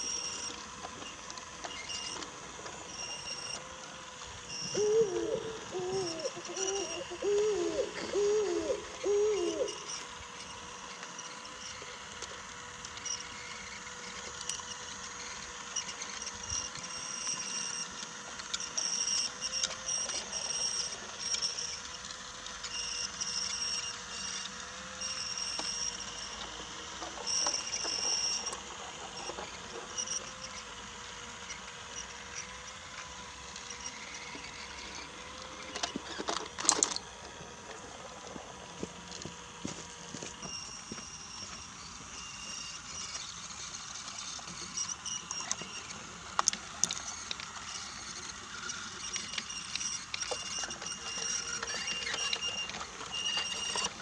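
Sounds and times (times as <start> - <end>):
toy train motor hum: 0.0 - 54.0
wheels clicking over rails: 16.9 - 54.0.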